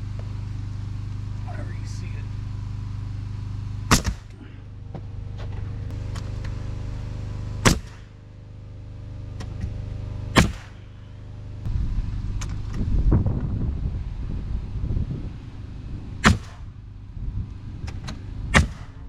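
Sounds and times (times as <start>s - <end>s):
motor hum: 0.0s - 19.0s
nail gun shots: 3.9s - 4.3s, 7.6s - 8.2s, 10.4s - 10.8s, 16.2s - 16.7s, 17.9s - 19.0s.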